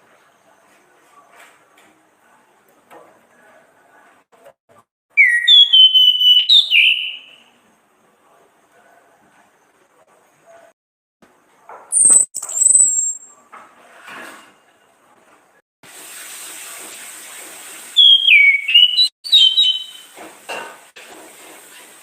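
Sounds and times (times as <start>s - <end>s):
thrush whistling song: 5.1s - 7.6s, 11.9s - 13.3s, 18.0s - 20.1s.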